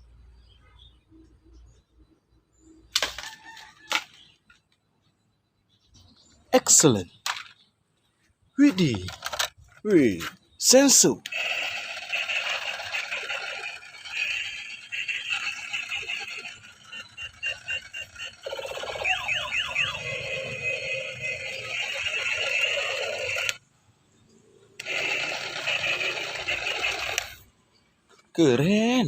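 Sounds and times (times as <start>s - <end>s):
toy gun beeping tones: 11.3s - 23.6s, 24.8s - 27.4s.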